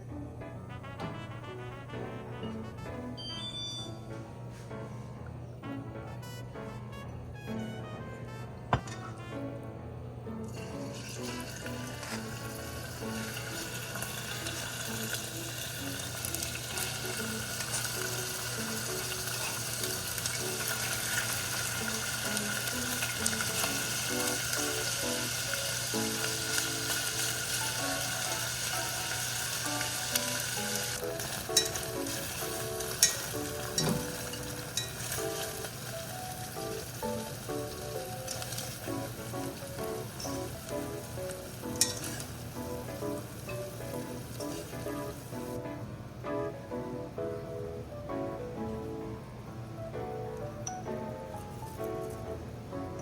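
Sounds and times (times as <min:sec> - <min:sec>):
food sizzling in a pan: 0:10.5 - 0:45.6.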